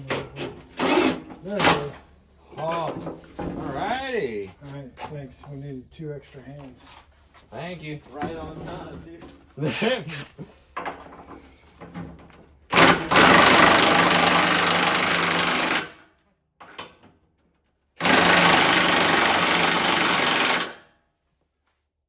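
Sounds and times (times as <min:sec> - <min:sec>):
impact wrench running: 0:00.8 - 0:01.8, 0:12.7 - 0:16.0, 0:18.0 - 0:20.9
tools and parts knocking: 0:10.8 - 0:13.9.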